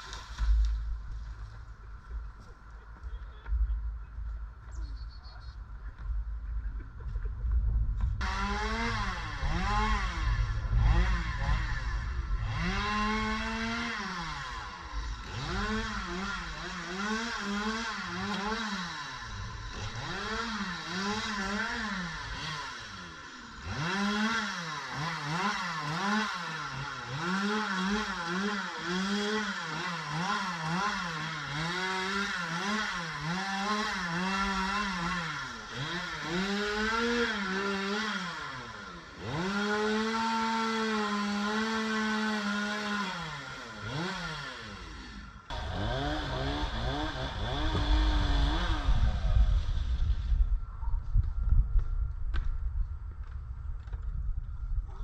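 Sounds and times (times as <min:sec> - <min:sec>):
chainsaw revving and cutting: 0:00.0 - 0:00.8, 0:08.2 - 0:50.4.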